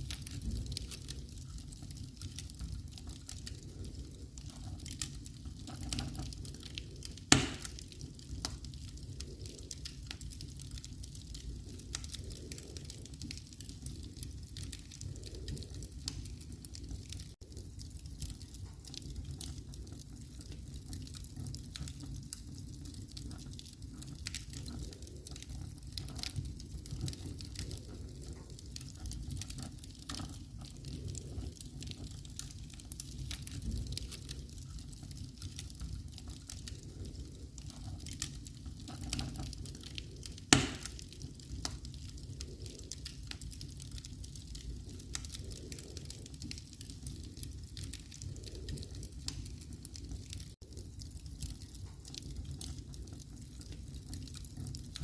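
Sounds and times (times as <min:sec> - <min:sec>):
fire low rumble: 0:00.0 - 0:55.0
wood fire crackling: 0:00.0 - 0:55.0
loud fire pop: 0:07.3 - 0:07.8, 0:40.5 - 0:41.0.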